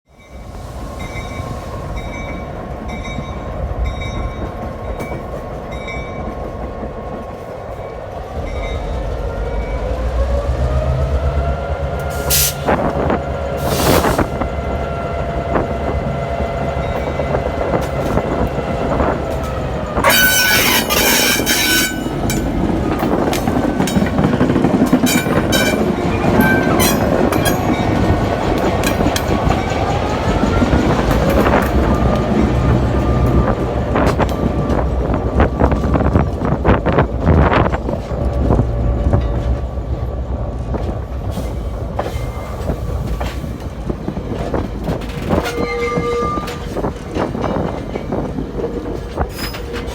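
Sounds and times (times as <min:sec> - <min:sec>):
diesel locomotive engine: 0:00.1 - 0:49.9
train cars clattering over rail joints: 0:16.5 - 0:49.9
crossing bell dinging: 0:20.0 - 0:28.3.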